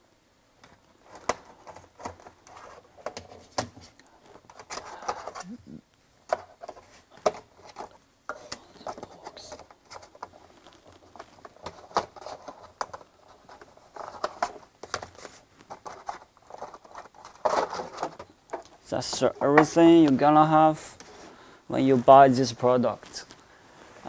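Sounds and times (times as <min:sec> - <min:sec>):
hands handling packaging: 0:06.2 - 0:24.0.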